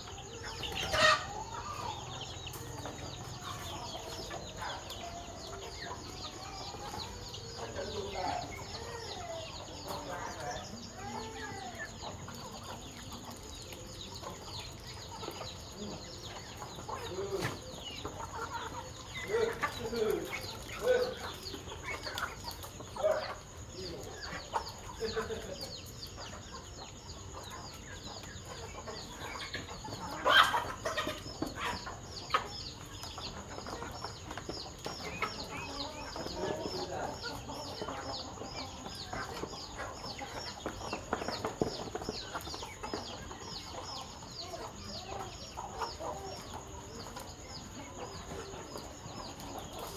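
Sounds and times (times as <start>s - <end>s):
chickens clucking: 0.0s - 49.9s
chicks peeping: 0.0s - 49.9s
chicken squawk: 0.4s - 2.1s, 29.0s - 32.6s.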